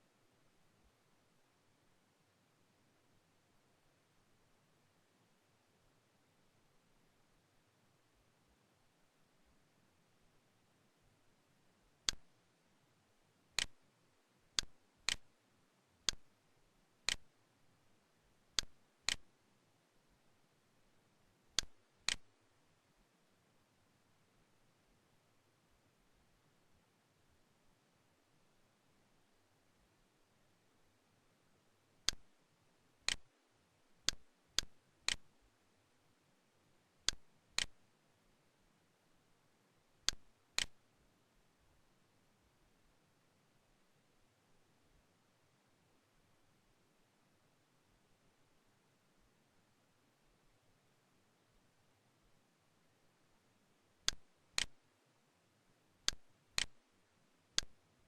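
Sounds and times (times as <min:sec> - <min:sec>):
computer mouse clicks: 0:13.6 - 0:13.8, 0:14.6 - 0:15.3, 0:16.0 - 0:16.2, 0:17.0 - 0:17.3, 0:18.6 - 0:19.3, 0:21.6 - 0:22.3, 0:32.0 - 0:32.3, 0:33.1 - 0:33.3, 0:34.0 - 0:35.3, 0:37.0 - 0:37.8, 0:40.0 - 0:40.8, 0:54.0 - 0:54.8, 0:56.0 - 0:56.8, 0:57.6 - 0:57.8.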